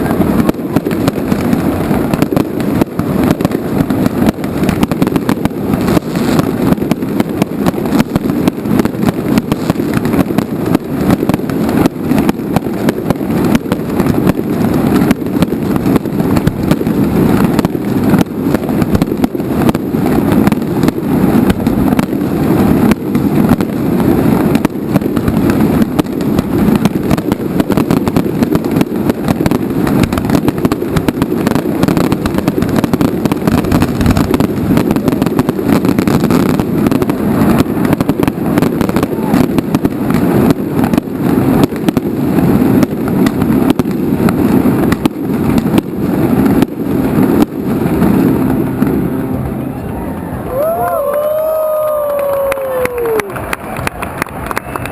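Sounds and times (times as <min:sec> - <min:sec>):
fireworks bangs and crackles: 0:00.0 - 0:54.9
low rumble: 0:45.9 - 0:54.4.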